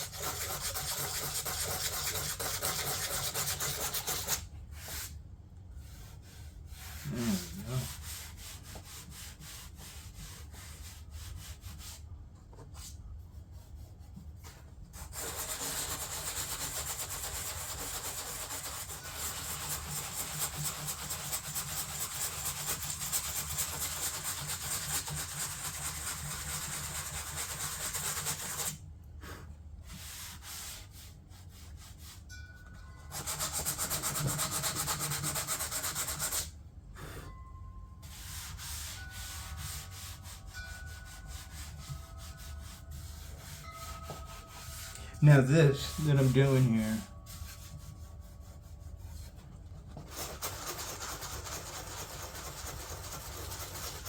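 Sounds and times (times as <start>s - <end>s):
sanding rough rasping: 0.0s - 4.4s, 15.1s - 28.7s.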